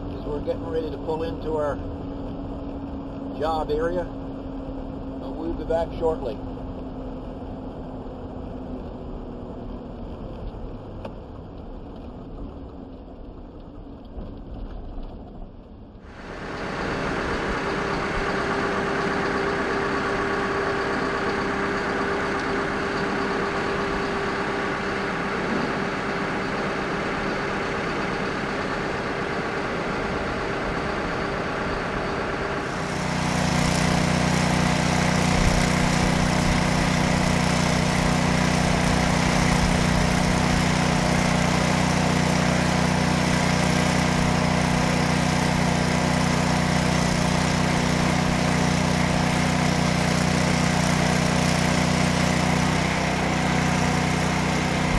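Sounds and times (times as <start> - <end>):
engine with constant whine: 0.0 - 54.9
deep steady hum: 16.0 - 50.7.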